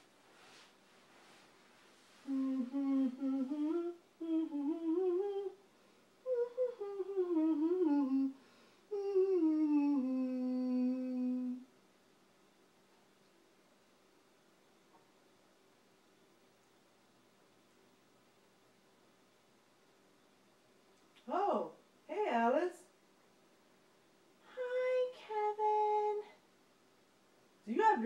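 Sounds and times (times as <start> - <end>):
person humming a tune: 2.2 - 5.6, 6.2 - 11.7.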